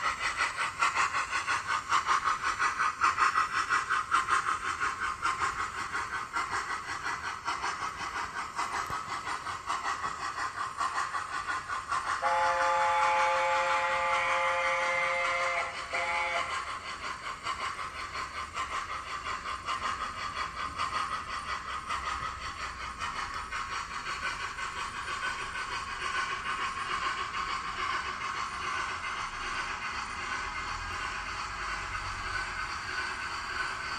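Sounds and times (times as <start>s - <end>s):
steam chuffing: 0.0s - 33.9s
model train chime whistle: 12.2s - 16.5s.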